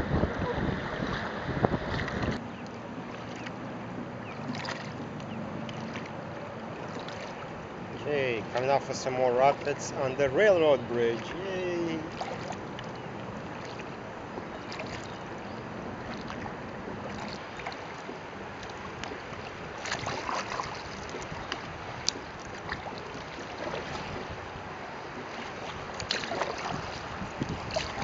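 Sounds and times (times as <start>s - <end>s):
river water rushing: 0.0s - 3.5s, 4.2s - 12.8s
water splashes: 0.0s - 28.0s.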